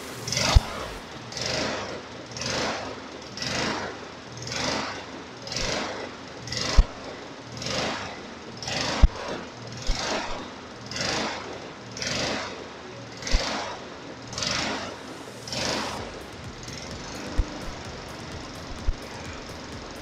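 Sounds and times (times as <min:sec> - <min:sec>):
rhythmic rubbing strokes: 0:00.0 - 0:01.2, 0:14.9 - 0:20.0.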